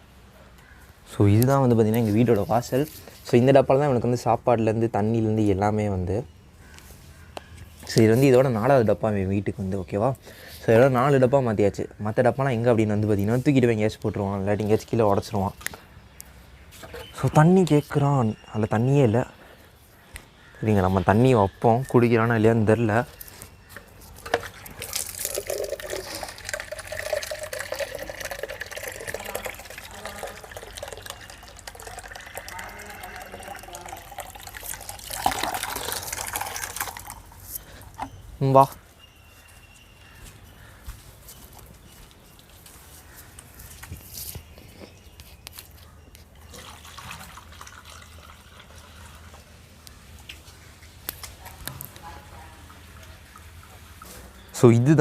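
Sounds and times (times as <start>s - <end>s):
water pouring into tin container: 24.2s - 37.6s, 46.4s - 49.5s
small clicks and drips: 24.2s - 38.0s, 45.2s - 54.4s.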